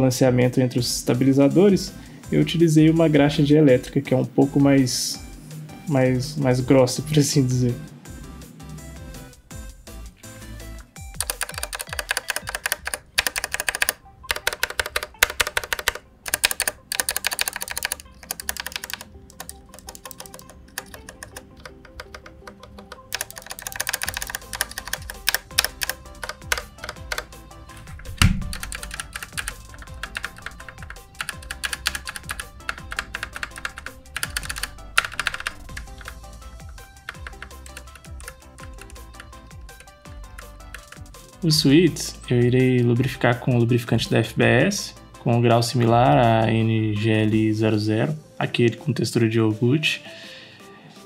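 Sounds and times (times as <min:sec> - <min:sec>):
background music: 0:00.0 - 0:51.0
mechanical keyboard key clacks: 0:11.2 - 0:27.3, 0:27.9 - 0:36.2, 0:37.0 - 0:41.1
heavier keyboard thud: 0:27.8 - 0:30.6.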